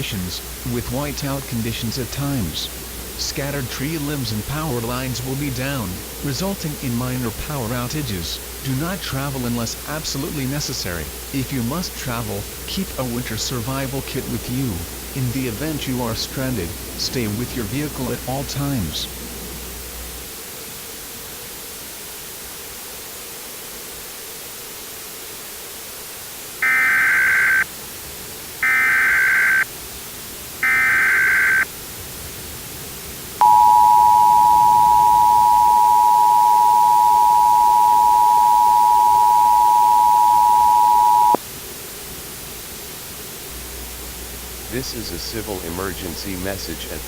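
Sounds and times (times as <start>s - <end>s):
steady background hiss: 0.0s - 47.0s
data burst tones: 26.6s - 27.7s, 28.6s - 29.7s, 30.6s - 31.7s, 33.4s - 41.4s
two-tone attention signal: 33.4s - 41.4s.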